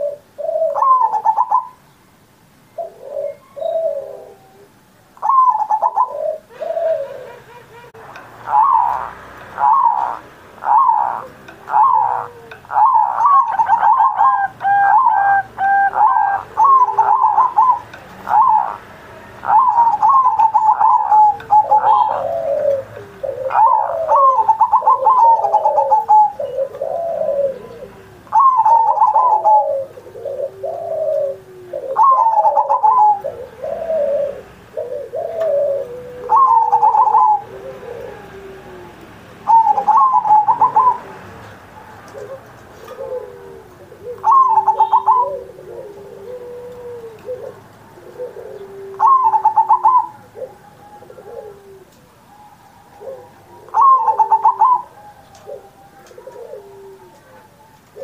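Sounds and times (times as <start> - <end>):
low curved coos: 0.0 - 1.8, 2.7 - 58.0
dove cooing: 0.0 - 1.9, 2.7 - 58.0.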